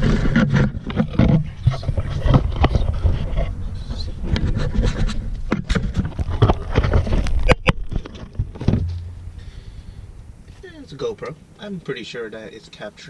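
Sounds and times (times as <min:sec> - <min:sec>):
scraping: 0:00.0 - 0:10.8
low rumble: 0:07.0 - 0:11.6.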